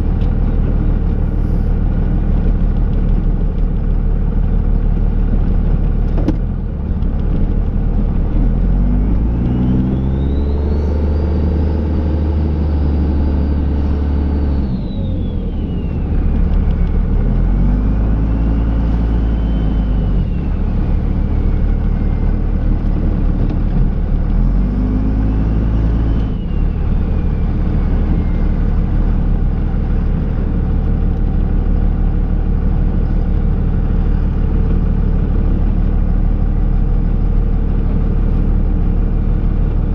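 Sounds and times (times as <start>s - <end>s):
diesel engine revving: 0.0s - 39.9s
turbo whistle: 9.6s - 11.6s.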